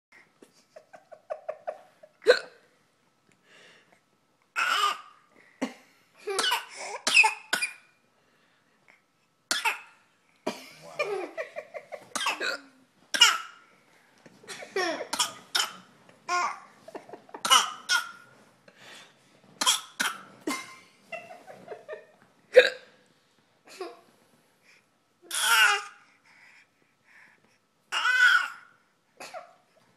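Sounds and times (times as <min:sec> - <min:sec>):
baby fake coughing: 0:06.3 - 0:07.9, 0:09.5 - 0:09.9, 0:12.2 - 0:13.6, 0:15.1 - 0:15.9, 0:17.4 - 0:18.2, 0:19.6 - 0:20.3
baby babbling: 0:25.3 - 0:26.0, 0:27.9 - 0:28.6.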